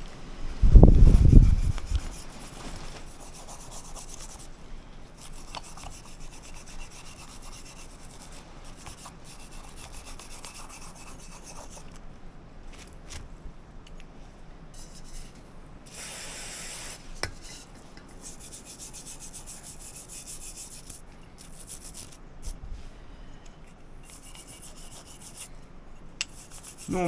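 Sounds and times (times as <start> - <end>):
wire brush scrubbing metal parts: 26.2 - 27.0.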